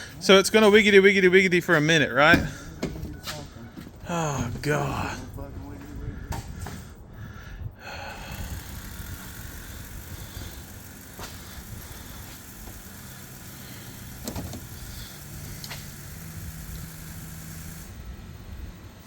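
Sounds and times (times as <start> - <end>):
diesel engine turning over: 7.8 - 19.0.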